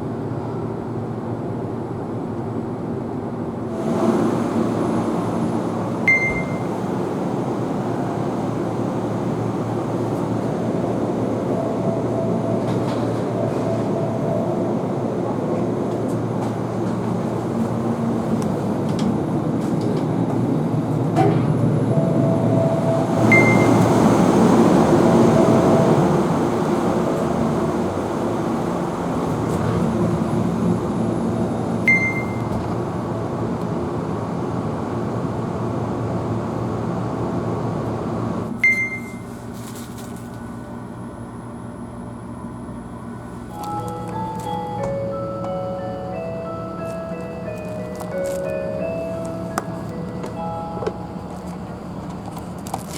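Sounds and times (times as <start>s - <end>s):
train interior rumble: 0.0s - 52.9s.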